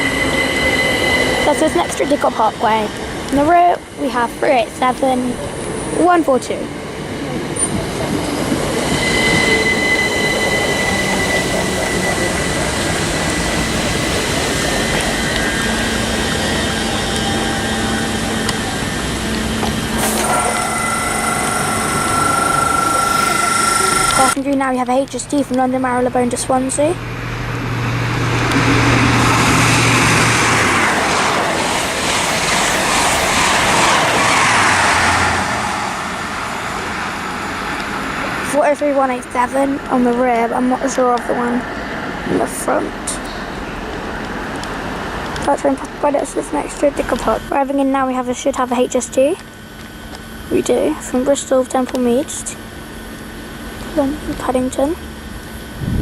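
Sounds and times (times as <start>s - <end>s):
high-pitched squeal: 0.0s - 4.0s, 7.5s - 24.4s, 27.2s - 38.6s
train rumbling: 0.0s - 56.0s.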